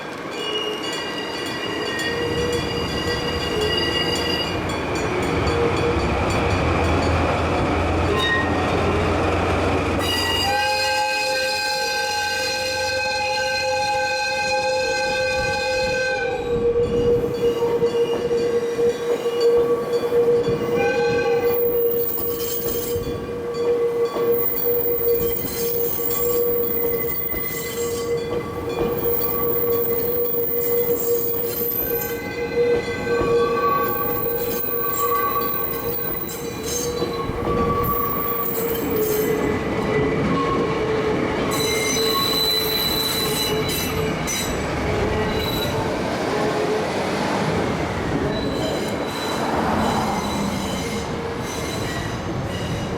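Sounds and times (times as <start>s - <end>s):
train wheels clattering and squealing: 0.0s - 47.0s, 47.6s - 52.9s
locomotive horn: 9.9s - 44.0s.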